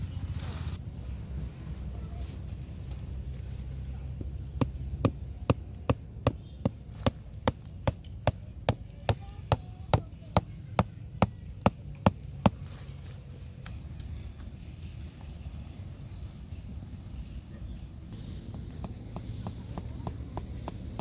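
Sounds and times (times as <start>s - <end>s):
hammer strikes: 4.2s - 12.7s, 18.1s - 21.0s.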